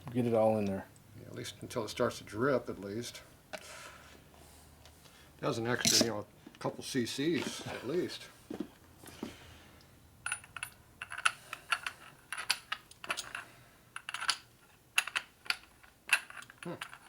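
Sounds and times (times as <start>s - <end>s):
small metal parts clinking: 5.8s - 6.1s, 10.2s - 17.0s.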